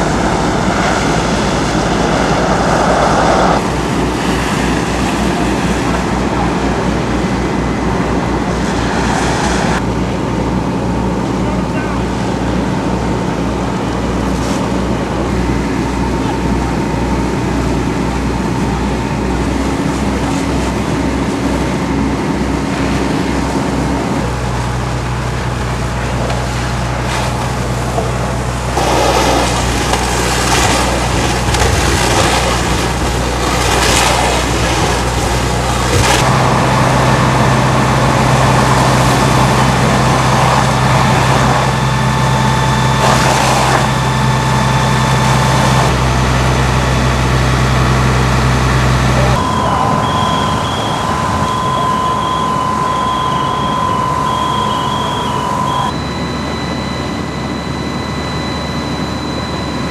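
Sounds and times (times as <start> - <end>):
fire truck engines running: 0.0 - 59.9
bursts of rushing noise: 20.8 - 45.9.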